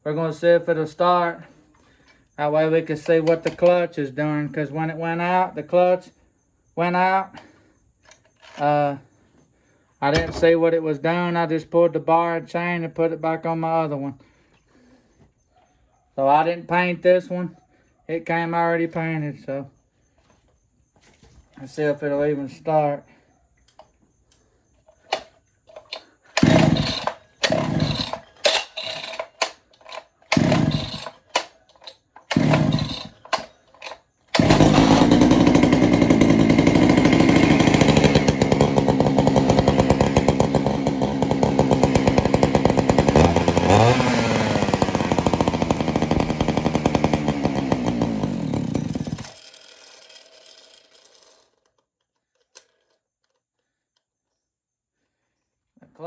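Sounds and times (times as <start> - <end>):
starter cord pulls: 2.9 - 3.8, 8.1 - 8.7, 10.1 - 10.5, 24.9 - 51.8
chainsaw engine running: 10.1 - 10.4, 25.0 - 51.5.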